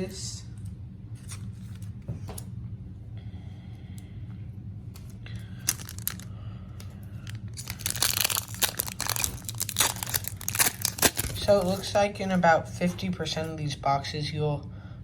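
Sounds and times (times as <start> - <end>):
wrapper crinkling and tearing: 5.0 - 6.3, 7.2 - 12.0.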